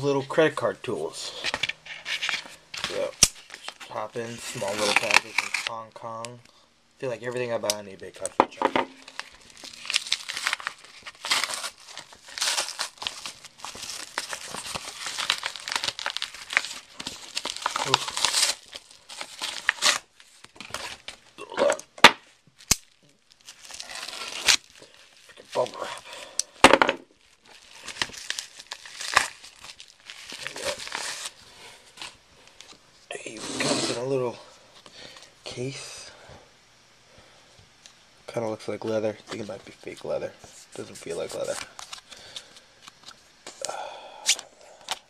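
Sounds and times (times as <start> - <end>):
package wrapping crinkling and tearing: 1.3 - 6.2, 7.3 - 32.8, 40.7 - 45.0
sharp crackle: 8.9 - 21.6.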